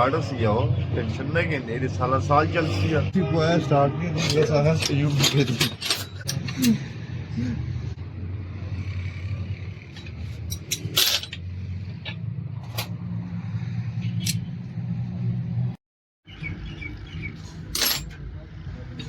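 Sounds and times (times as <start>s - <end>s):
metallic clinks of tools: 4.2s - 6.8s, 17.7s - 18.2s.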